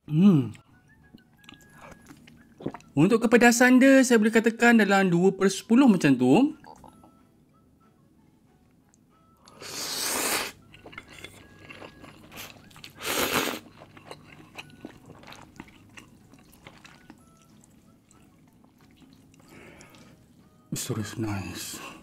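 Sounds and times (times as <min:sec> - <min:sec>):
wet chewing: 0:00.5 - 0:03.0, 0:09.4 - 0:20.4
person slurping noodles: 0:09.5 - 0:10.6, 0:12.3 - 0:13.8.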